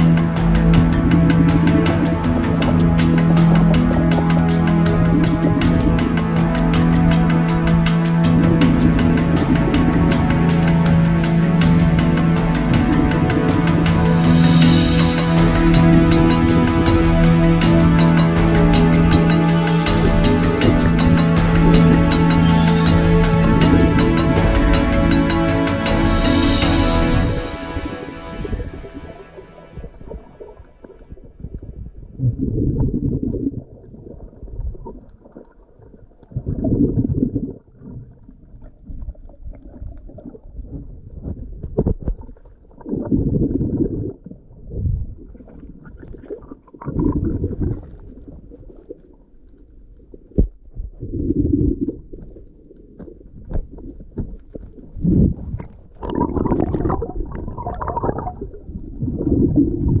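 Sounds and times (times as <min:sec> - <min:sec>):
muffled underwater gurgling: 0:45.3 - 0:48.8, 0:51.0 - 1:00.0.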